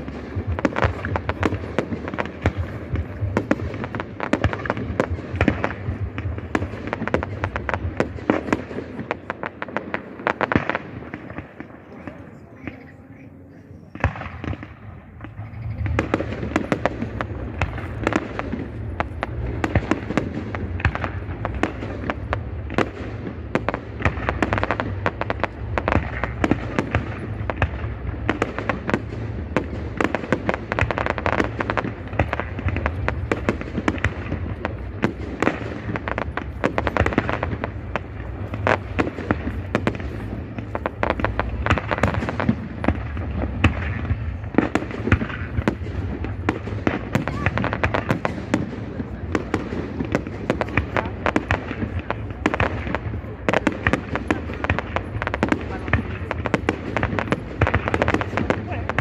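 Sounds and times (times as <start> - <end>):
fireworks bangs and crackling: 0.0 - 59.0.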